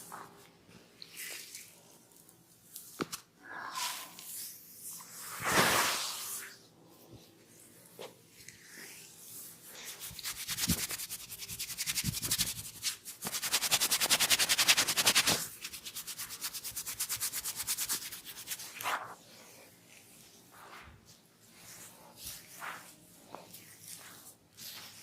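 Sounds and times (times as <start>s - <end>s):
hands rubbing over skin: 9.7s - 19.2s.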